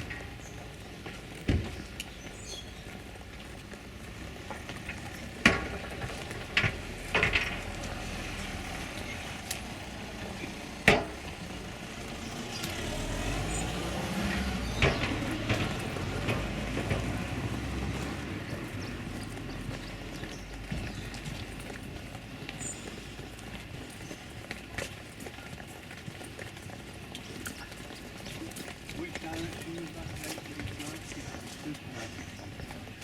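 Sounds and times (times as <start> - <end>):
street background noise: 0.0 - 33.0
vehicle low rumble: 0.0 - 33.0
sharp knocks: 10.8 - 11.2.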